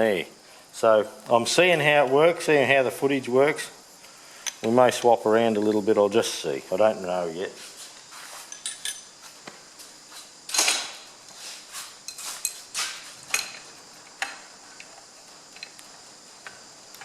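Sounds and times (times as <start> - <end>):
metal clicks and clinks: 8.5 - 9.1.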